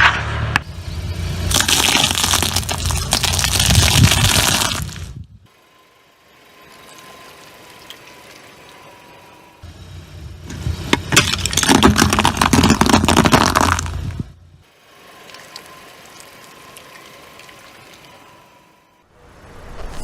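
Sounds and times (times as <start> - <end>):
car engine rumbling: 0.0 - 20.0
tyre crushing crunchy objects: 1.5 - 5.2, 10.9 - 14.2.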